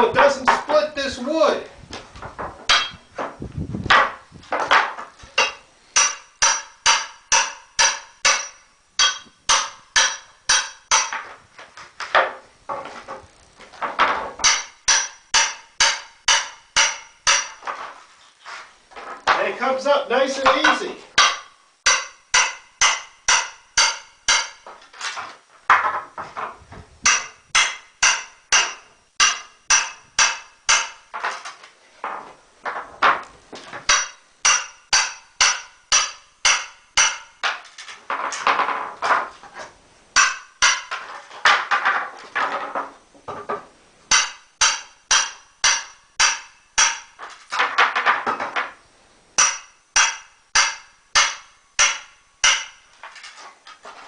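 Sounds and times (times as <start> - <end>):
hammer striking metal crowbar: 2.7 - 3.1, 3.9 - 11.3, 14.4 - 17.8, 20.4 - 24.8, 27.1 - 31.4, 33.9 - 37.6, 40.2 - 41.7, 44.1 - 48.0, 49.4 - 52.9.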